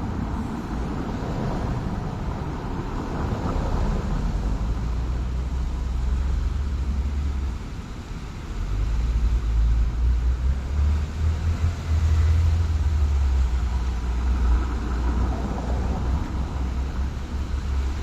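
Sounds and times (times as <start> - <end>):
road traffic rumble: 0.0 - 18.0.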